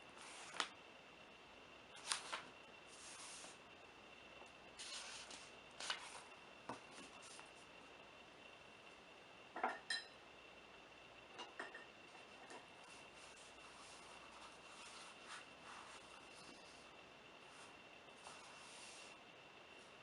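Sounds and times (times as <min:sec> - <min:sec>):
faint high whine: 0:00.0 - 0:20.0
sliding rubs: 0:17.5 - 0:19.2.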